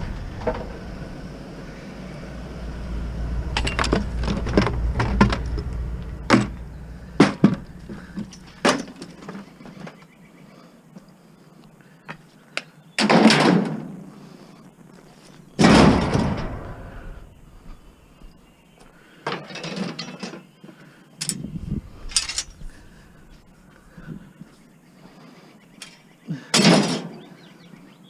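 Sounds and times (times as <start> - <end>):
scrap dropped with loud bangs: 3.4 - 9.4, 15.6 - 17.8.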